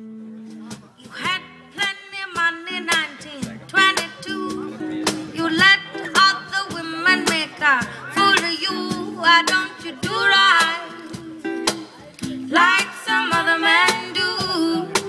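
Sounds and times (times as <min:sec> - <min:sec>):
strummed guitar: 0:00.0 - 0:15.0
women singing in harmony: 0:08.1 - 0:11.6, 0:12.4 - 0:15.0.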